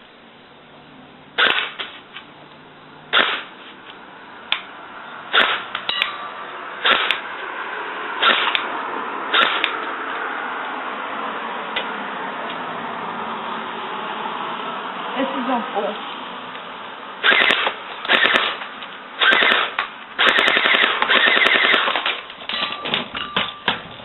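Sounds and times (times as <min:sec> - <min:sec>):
airsoft gun single shots: 0:01.4 - 0:02.0, 0:03.1 - 0:03.5, 0:05.3 - 0:05.9, 0:06.8 - 0:07.3, 0:08.2 - 0:08.7, 0:09.3 - 0:09.8, 0:17.2 - 0:22.2.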